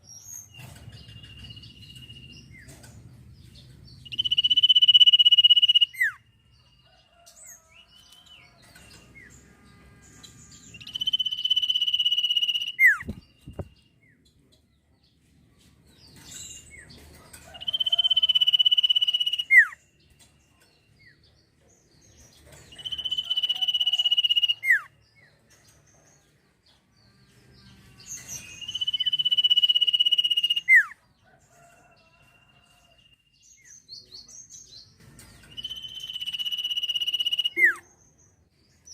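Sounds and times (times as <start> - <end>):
bird singing trilled note: 4.1 - 6.2, 9.2 - 13.7, 35.5 - 37.8.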